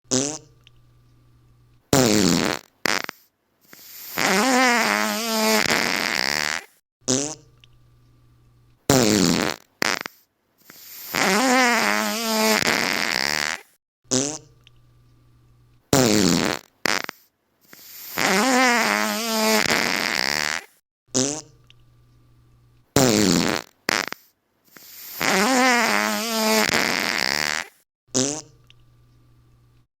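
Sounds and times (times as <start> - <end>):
fart sound effects: 0.1 - 0.5, 1.9 - 7.5, 8.9 - 14.5, 15.9 - 21.6, 23.0 - 28.6.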